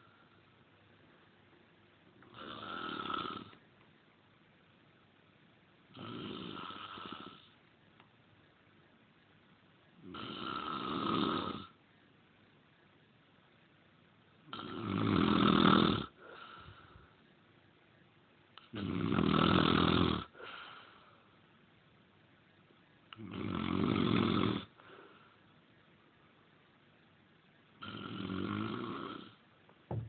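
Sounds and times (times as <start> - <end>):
loud snoring: 2.3 - 3.6, 5.9 - 7.5, 10.0 - 11.7, 14.5 - 16.2, 18.7 - 20.4, 23.2 - 24.7, 27.8 - 29.4
soft breath out: 16.2 - 17.2.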